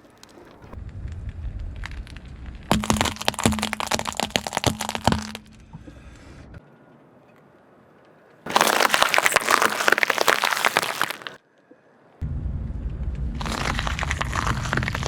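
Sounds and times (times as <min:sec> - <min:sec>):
tyre crushing crunchy objects: 0:01.8 - 0:05.6, 0:08.5 - 0:11.4, 0:13.4 - 0:15.0.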